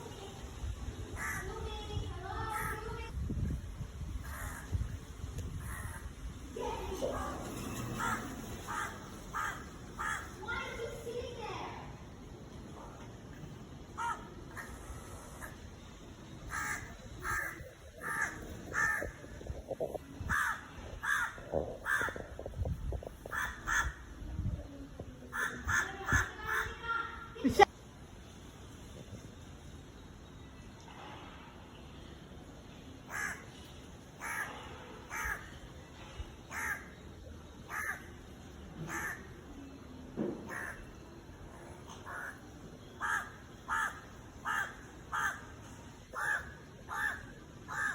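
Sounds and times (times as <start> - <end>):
crow cawing: 8.0 - 10.4, 14.0 - 14.8, 16.5 - 19.1, 20.3 - 22.2, 23.3 - 24.0, 25.3 - 26.7, 33.1 - 33.4, 34.2 - 35.5, 36.5 - 36.9, 37.7 - 38.1, 38.9 - 39.3, 40.4 - 40.9, 42.1 - 42.4, 43.0 - 45.5, 46.1 - 47.9.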